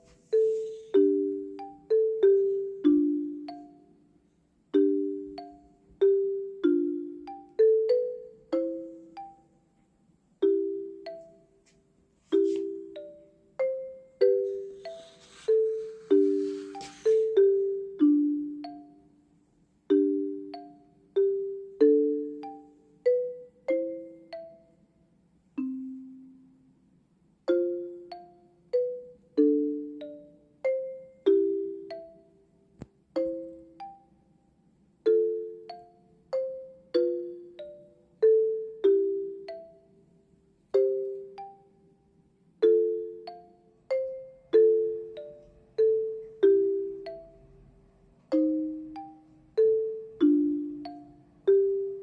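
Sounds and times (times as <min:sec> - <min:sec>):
bell-like melody: 0:00.0 - 0:04.1, 0:04.7 - 0:09.7, 0:10.4 - 0:11.6, 0:12.3 - 0:24.8, 0:42.6 - 0:47.7, 0:48.3 - 0:52.0.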